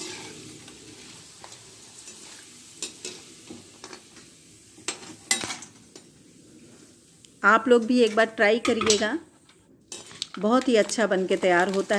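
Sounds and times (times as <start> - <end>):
frying in hot oil sizzle: 0.0 - 11.9
clicks of stirring in pan: 7.2 - 11.9.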